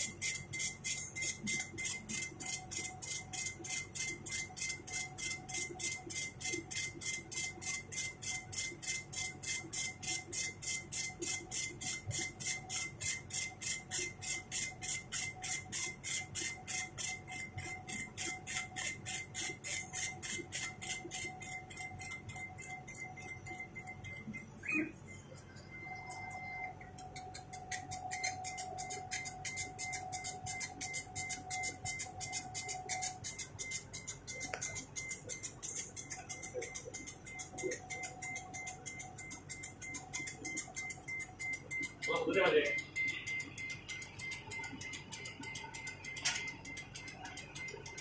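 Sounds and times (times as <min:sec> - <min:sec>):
machine high whine: 0:11.0 - 0:35.4.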